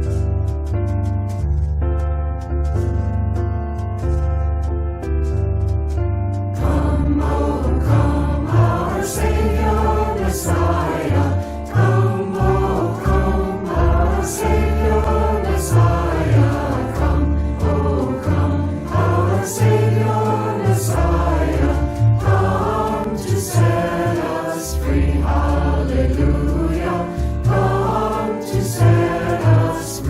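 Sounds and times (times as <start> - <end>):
instrumental accompaniment: 0.0 - 30.0
choir singing a hymn: 6.6 - 30.0.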